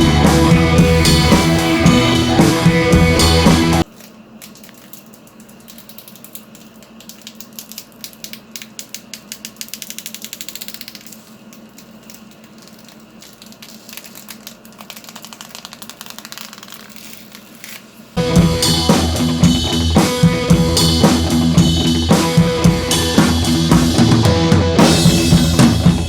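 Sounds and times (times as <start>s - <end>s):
rapid small mechanical clicks: 4.4s - 17.8s.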